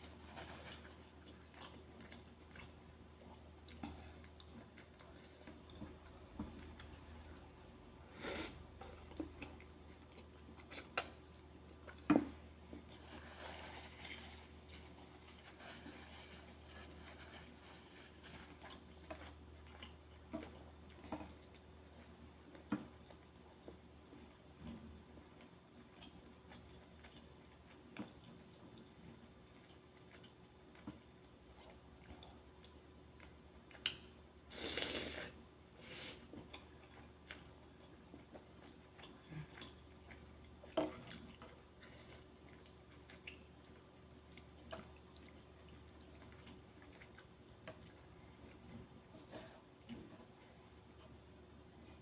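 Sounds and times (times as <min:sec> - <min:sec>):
person chewing: 0:00.0 - 0:52.0.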